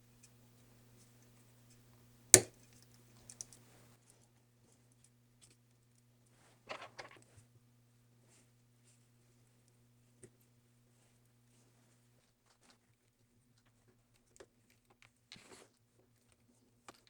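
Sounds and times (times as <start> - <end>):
faint steady low hum: 0.0 - 14.5
small clicks and taps of tools: 2.4 - 3.7.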